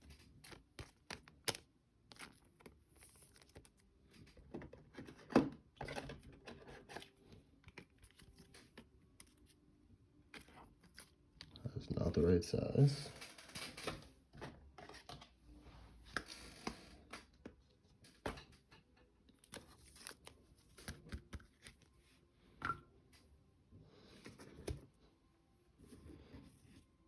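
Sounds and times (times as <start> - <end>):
trading cards rustling and clicking: 0.0 - 9.6, 19.3 - 21.9.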